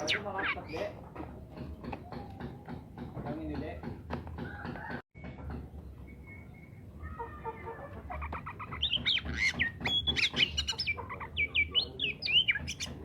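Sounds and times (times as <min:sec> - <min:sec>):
bird singing whistled notes: 0:05.9 - 0:07.0.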